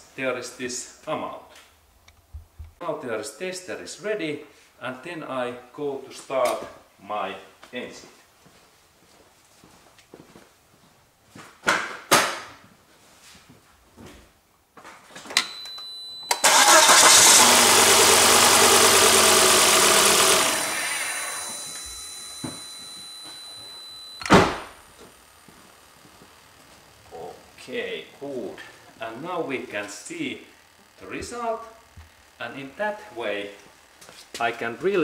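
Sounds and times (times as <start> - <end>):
starter motor cranking engine: 16.3 - 24.2
steady high tone: 17.7 - 31.8
sharp thump: 24.2 - 24.8.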